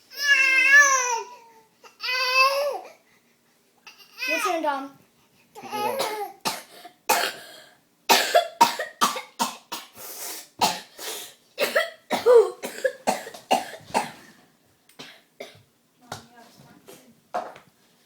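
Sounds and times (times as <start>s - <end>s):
boy fake-coughing: 5.8s - 9.9s, 11.6s - 14.1s.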